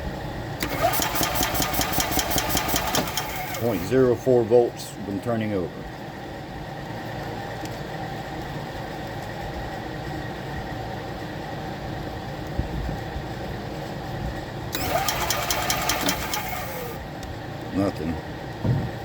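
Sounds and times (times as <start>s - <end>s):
engine cranking on starter: 0.6s - 4.2s, 14.7s - 17.1s.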